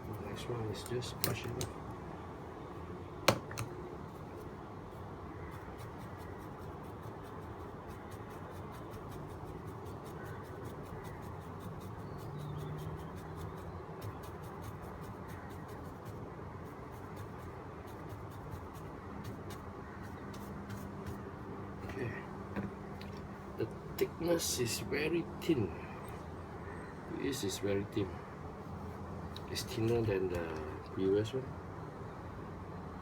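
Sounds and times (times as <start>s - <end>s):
brush scratching: 4.1s - 21.3s.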